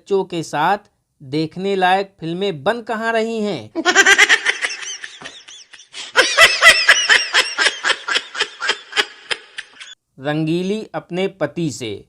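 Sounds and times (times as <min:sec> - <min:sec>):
high-pitched laughter: 0:03.8 - 0:10.0.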